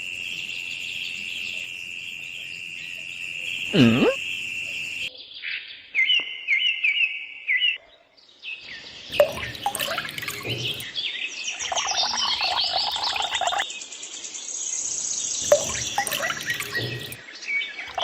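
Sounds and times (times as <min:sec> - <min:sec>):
high insect trill: 0:00.0 - 0:05.1, 0:11.6 - 0:17.2
short rising bird chirps: 0:11.6 - 0:13.6.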